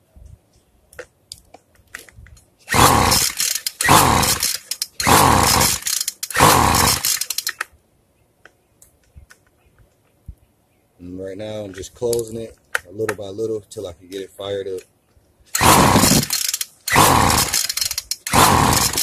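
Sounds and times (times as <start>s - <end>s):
string trimmer pull-starting: 2.7s - 7.6s, 15.5s - 19.0s.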